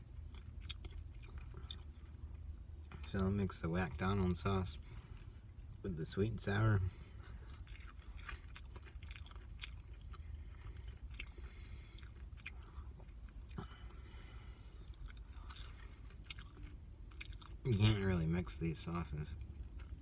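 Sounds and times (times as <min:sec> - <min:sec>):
wet chewing clicks and smacks: 0:00.0 - 0:04.4, 0:07.2 - 0:18.1, 0:19.2 - 0:20.0.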